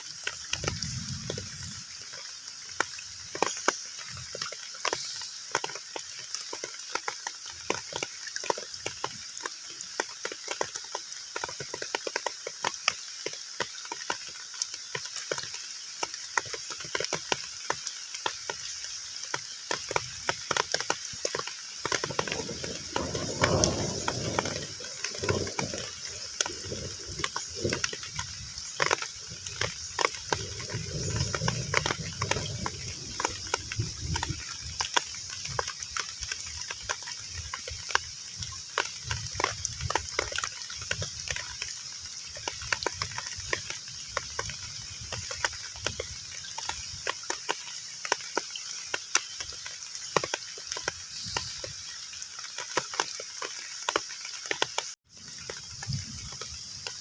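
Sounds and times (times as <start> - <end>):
heavy rain on water: 0.0 - 57.0
low rough rumble: 22.1 - 27.8.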